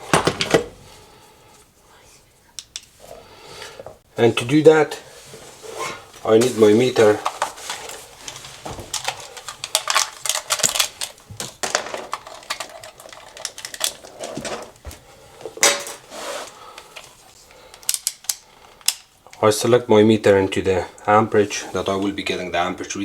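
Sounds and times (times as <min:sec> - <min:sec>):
tools clicking and clattering: 0:07.0 - 0:14.8, 0:15.5 - 0:16.1, 0:17.7 - 0:19.4.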